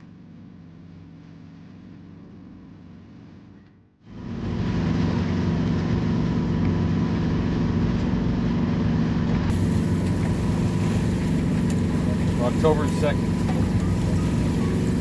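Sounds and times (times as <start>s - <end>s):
bright hiss: 9.5s - 15.0s
loud engine drone: 9.5s - 15.0s.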